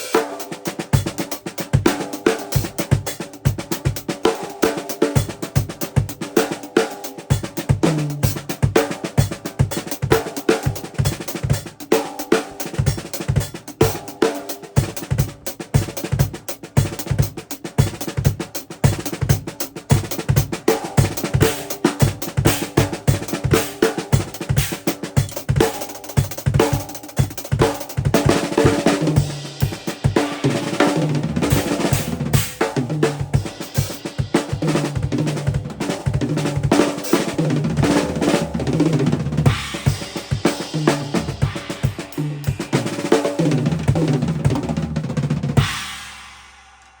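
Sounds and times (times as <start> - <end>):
cymbals: 0.0 - 1.3, 39.4 - 44.2, 45.6 - 47.0
snare drum rimshots and rolls: 0.0 - 47.0
bass drum: 14.8 - 47.0.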